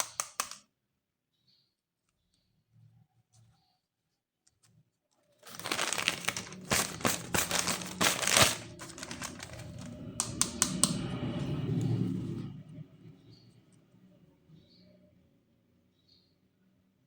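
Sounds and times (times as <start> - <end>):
sharp clicks: 0.0 - 0.6, 8.9 - 11.0
plastic packaging crinkling: 5.4 - 10.4.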